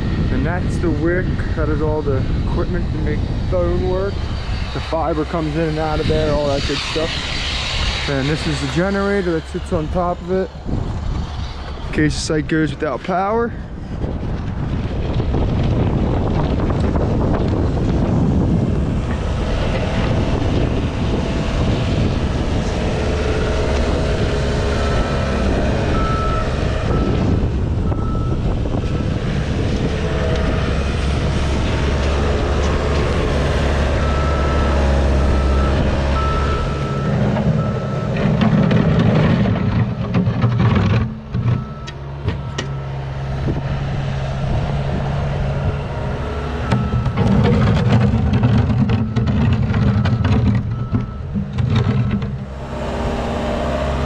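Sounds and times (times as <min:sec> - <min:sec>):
diesel engine running: 0:00.0 - 0:54.0
reversing alarm beeping: 0:24.6 - 0:29.2, 0:33.8 - 0:38.2, 0:41.5 - 0:43.0, 0:46.4 - 0:47.4, 0:49.0 - 0:51.4.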